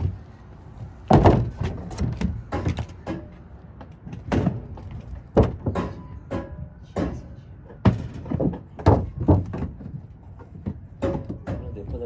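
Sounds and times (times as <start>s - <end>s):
sheet metal ductwork knocking: 1.1s - 12.0s.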